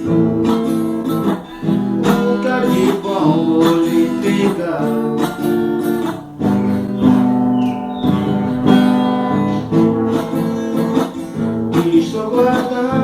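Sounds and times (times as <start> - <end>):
acoustic guitar strumming chords: 0.0 - 13.0.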